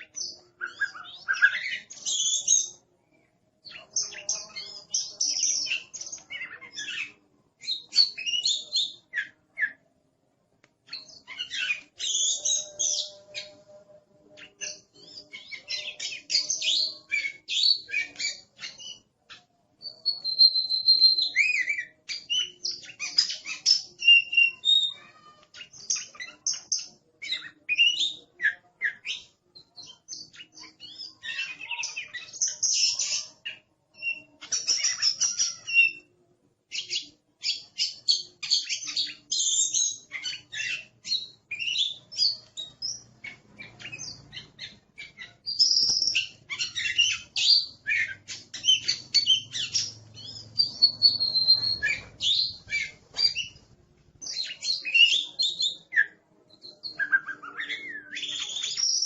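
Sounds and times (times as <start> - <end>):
magpie-robin singing: 0.0 - 2.8, 3.6 - 9.8, 10.8 - 59.0.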